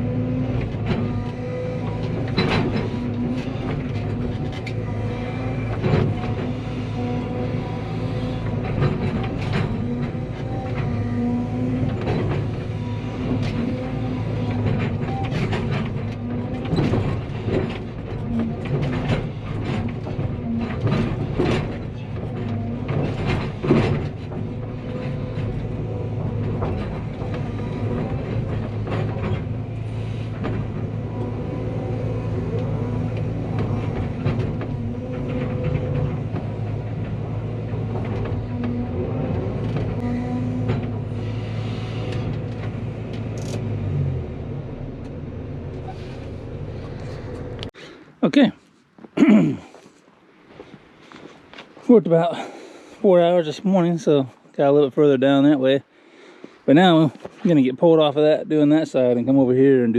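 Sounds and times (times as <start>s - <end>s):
excavator diesel engine running: 0.0s - 48.5s
sharp mechanical knocks and clanks: 0.6s - 6.8s, 8.0s - 11.2s, 11.8s - 31.0s.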